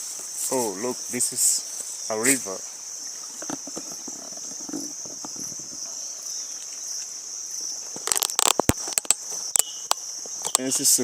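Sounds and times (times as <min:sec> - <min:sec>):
crickets chirping: 0:00.0 - 0:11.0
sharp clicks: 0:08.0 - 0:10.7.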